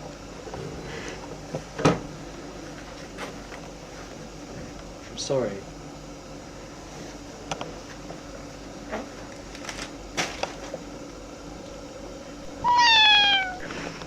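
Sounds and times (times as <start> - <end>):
cat meowing: 12.5 - 13.9.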